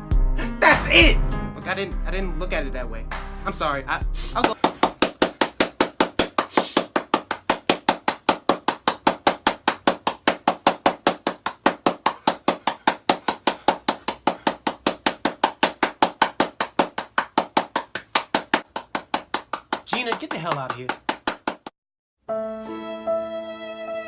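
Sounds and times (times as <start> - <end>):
rapid rhythmic knocking: 4.4 - 21.7.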